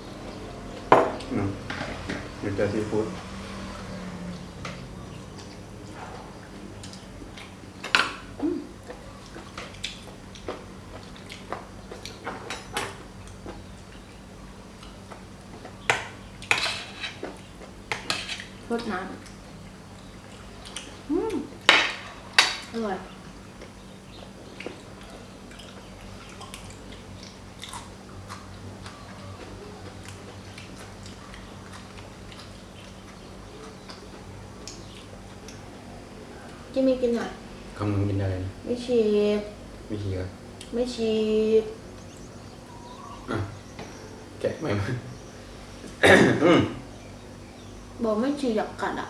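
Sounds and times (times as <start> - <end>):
faint electrical hum: 0.0 - 49.0
person chewing food: 5.0 - 16.5, 19.2 - 21.1, 23.2 - 36.7.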